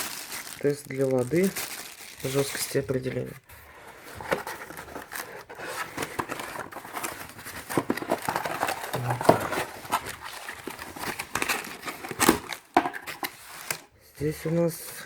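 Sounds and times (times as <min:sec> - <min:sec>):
packaging rustling and crinkling: 0:00.0 - 0:15.0.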